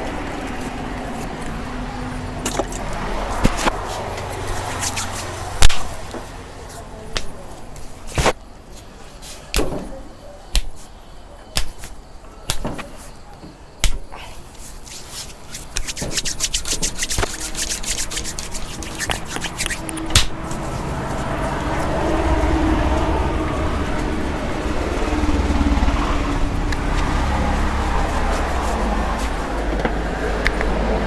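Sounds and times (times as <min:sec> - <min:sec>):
passing vehicle rumble: 0:00.0 - 0:07.1, 0:16.0 - 0:31.0
hands slapping skin: 0:07.1 - 0:08.4, 0:09.5 - 0:09.8, 0:10.5 - 0:10.9, 0:11.5 - 0:12.9, 0:13.8 - 0:14.1, 0:14.9 - 0:20.4
rapid tapping on skin: 0:10.5 - 0:10.9, 0:11.5 - 0:12.8, 0:14.9 - 0:20.7.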